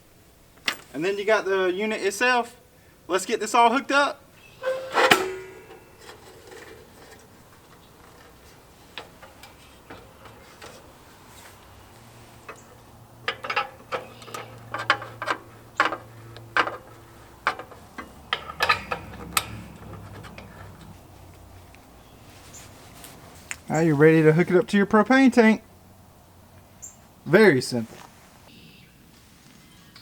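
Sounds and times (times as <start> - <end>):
metallic clicks of hose fitting: 13.3 - 20.9.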